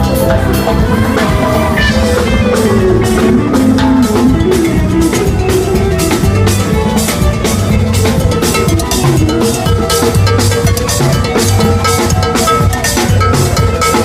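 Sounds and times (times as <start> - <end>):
drum kit beat: 0.0 - 14.0
live rock band playing: 0.0 - 14.0.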